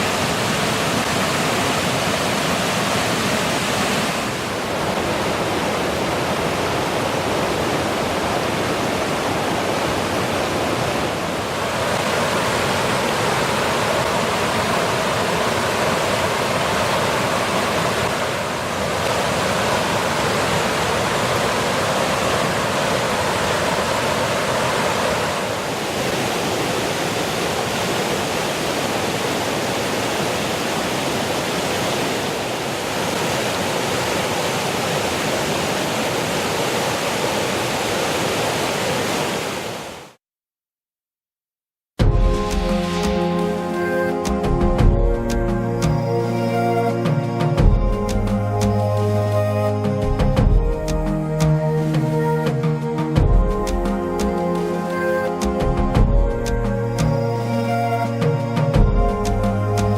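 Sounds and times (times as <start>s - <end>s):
water rushing down rocky cascade: 0.0s - 40.2s.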